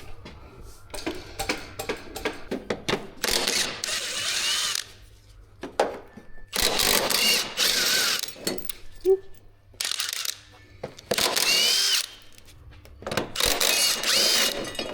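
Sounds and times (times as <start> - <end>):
hand tools clicking and knocking: 0.9 - 4.0
power tool spinning fasteners: 3.2 - 4.9, 6.6 - 8.5, 9.8 - 10.5, 11.1 - 12.4, 13.4 - 14.9.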